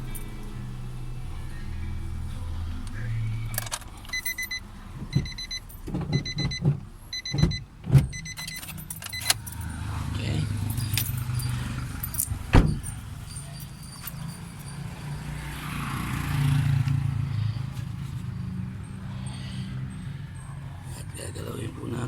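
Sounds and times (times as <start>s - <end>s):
low steady hum: 0.0s - 9.6s
car warning chime beeps: 1.5s - 9.9s
clicks and knocks of parts: 3.6s - 4.4s.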